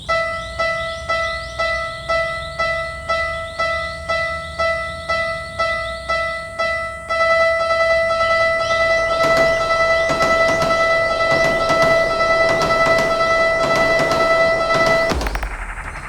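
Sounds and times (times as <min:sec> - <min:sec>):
level-crossing alarm ringing: 0:00.0 - 0:16.0
train rattling past: 0:07.0 - 0:16.0.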